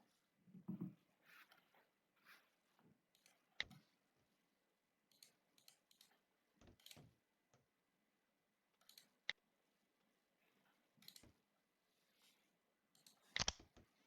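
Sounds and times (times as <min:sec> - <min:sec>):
faint clicks and light taps: 0:11.0 - 0:11.4.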